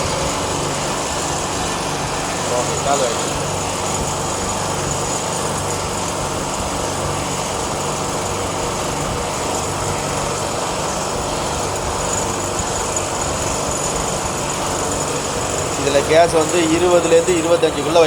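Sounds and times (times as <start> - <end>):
freezer compressor humming: 0.0 - 18.0.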